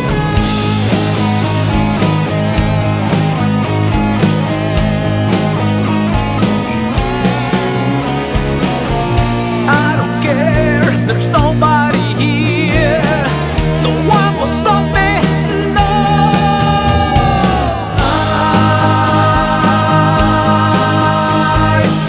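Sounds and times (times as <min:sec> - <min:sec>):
lead guitar solo: 0:00.0 - 0:09.8
bass guitar: 0:00.0 - 0:22.0
drums: 0:00.0 - 0:22.0.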